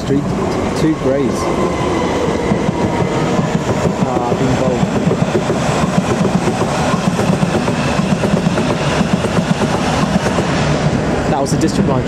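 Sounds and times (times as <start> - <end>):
train wheels rumbling on rails: 0.0 - 12.0.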